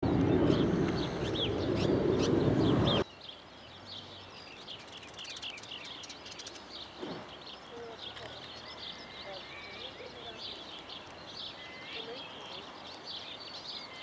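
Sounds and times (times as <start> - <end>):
loud low rushing noise: 0.0 - 3.0
birds chirping: 0.0 - 14.0.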